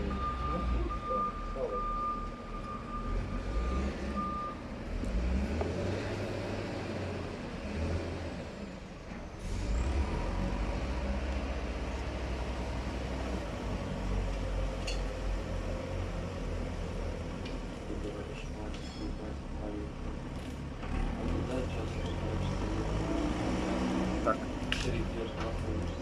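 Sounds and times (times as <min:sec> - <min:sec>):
diesel machinery rumbling: 0:00.0 - 0:26.0.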